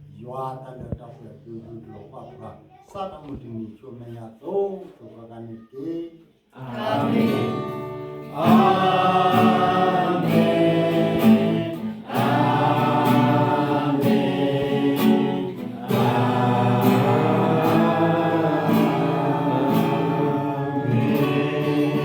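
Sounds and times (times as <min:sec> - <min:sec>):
group of voices singing: 0:06.6 - 0:22.0.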